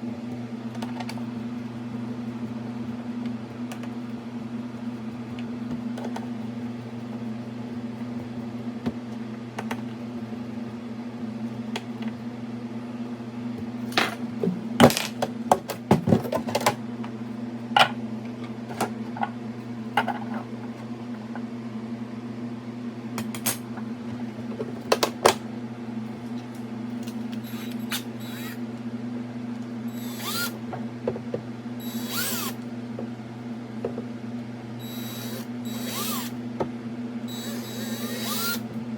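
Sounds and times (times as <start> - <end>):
electrical hum: 0.0 - 38.9
short whirring bursts: 27.4 - 28.6, 29.9 - 30.6, 31.8 - 32.6, 34.8 - 36.4, 37.3 - 38.7.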